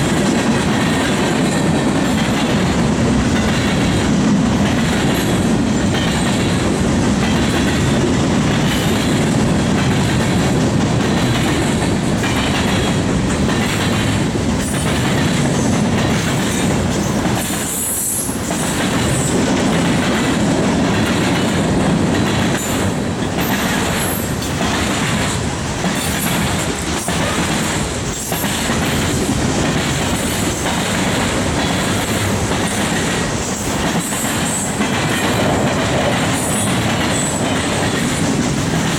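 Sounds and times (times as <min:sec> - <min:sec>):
freight train rumbling past: 0:00.0 - 0:38.9
wheels clicking over rail joints: 0:00.0 - 0:38.9
train wheels squealing: 0:14.6 - 0:19.4, 0:22.6 - 0:24.7.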